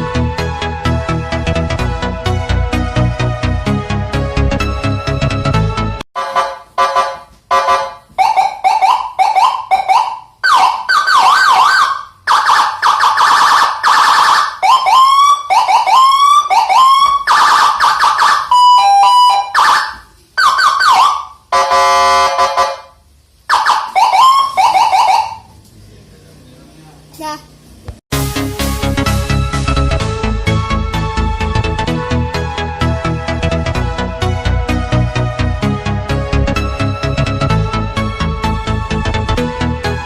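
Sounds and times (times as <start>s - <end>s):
vehicle siren cycling tones: 6.2s - 25.6s.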